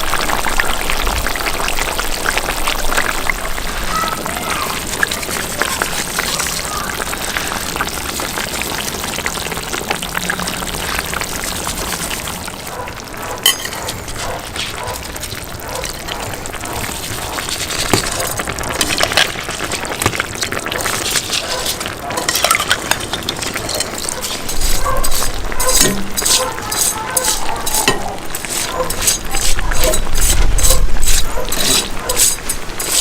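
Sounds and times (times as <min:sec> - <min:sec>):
food sizzling in a pot: 0:00.0 - 0:33.0
utensil clinking against metal: 0:13.2 - 0:19.3, 0:20.8 - 0:33.0.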